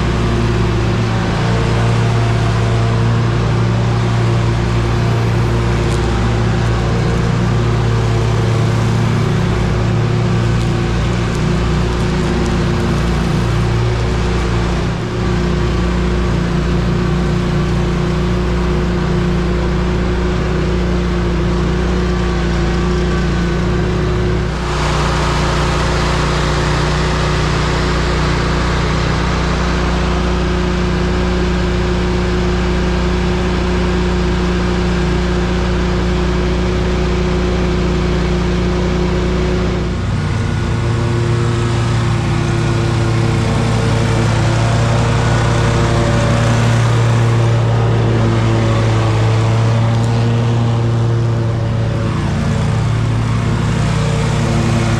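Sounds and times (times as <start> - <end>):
lawn mower engine running: 0.0 - 54.9.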